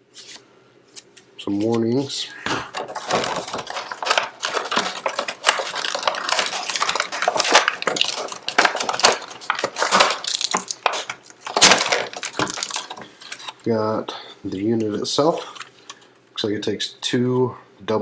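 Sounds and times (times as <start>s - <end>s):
cardboard packaging rustling: 1.6s - 13.6s.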